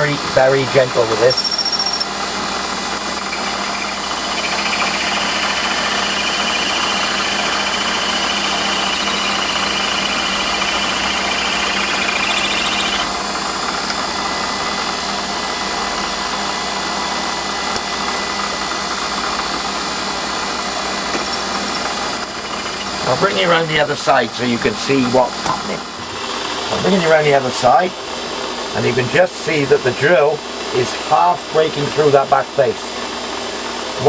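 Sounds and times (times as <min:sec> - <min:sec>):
high wavering drill squeal: 0:01.0 - 0:13.2, 0:21.3 - 0:22.9
lathe running: 0:01.2 - 0:15.0, 0:21.2 - 0:24.8.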